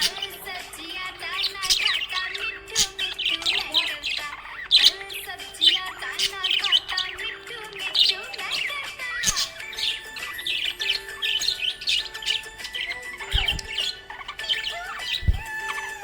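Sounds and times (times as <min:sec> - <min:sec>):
budgerigars chirping and warbling: 0:00.0 - 0:16.0
dull low thumps: 0:13.3 - 0:13.8, 0:15.2 - 0:15.5.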